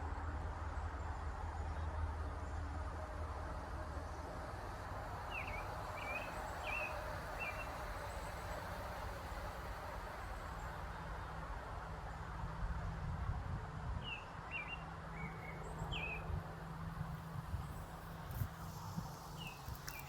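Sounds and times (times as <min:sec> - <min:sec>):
low outdoor rumble: 0:00.0 - 0:20.0
small birds chirping: 0:17.7 - 0:20.0.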